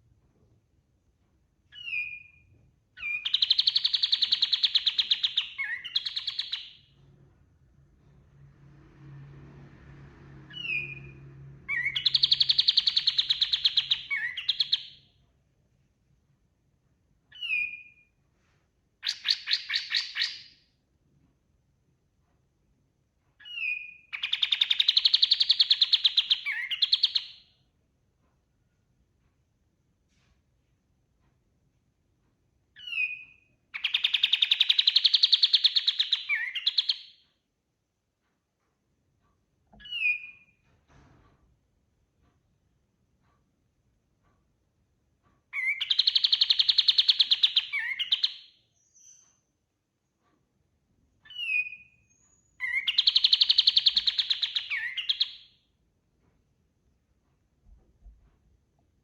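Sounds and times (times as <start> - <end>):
songbird whistling and trilling: 1.7 - 6.9, 10.5 - 11.1, 11.7 - 15.0, 17.3 - 18.1, 19.0 - 20.5, 23.4 - 27.4, 32.8 - 37.2, 39.8 - 40.6, 45.5 - 49.5, 51.2 - 55.6.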